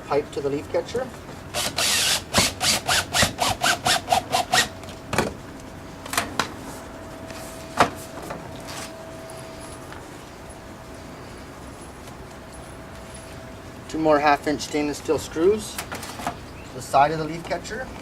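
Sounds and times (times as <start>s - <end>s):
cordless drill driving screw: 1.6s - 4.7s.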